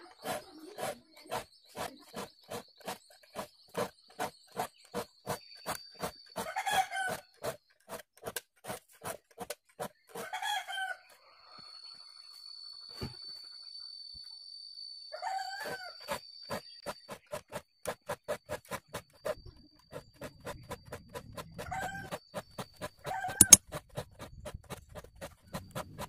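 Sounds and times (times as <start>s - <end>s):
file rasping on saw teeth: 0.2s - 6.5s, 23.3s - 26.0s.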